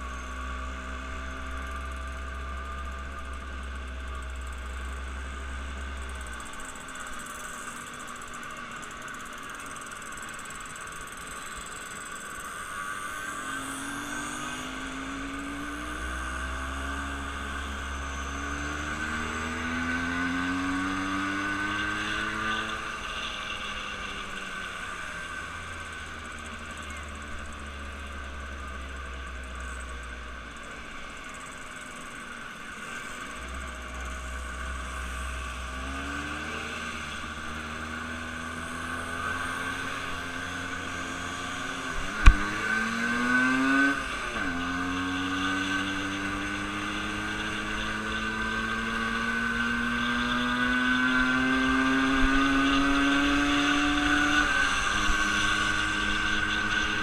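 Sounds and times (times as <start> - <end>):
vehicle engine accelerating: 0.0 - 57.0.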